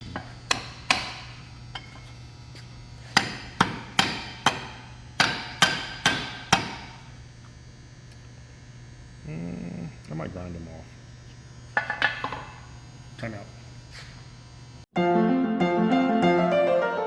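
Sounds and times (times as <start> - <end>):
hammer striking metal: 0.2 - 2.0, 3.1 - 7.0.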